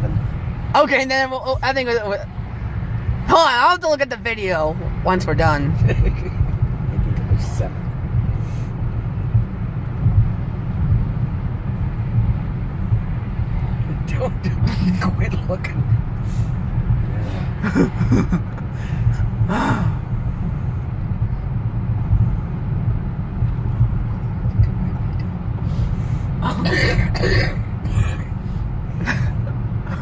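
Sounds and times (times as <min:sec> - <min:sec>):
road rumble inside moving car: 0:00.0 - 0:30.0
woman sneezing: 0:26.4 - 0:28.3.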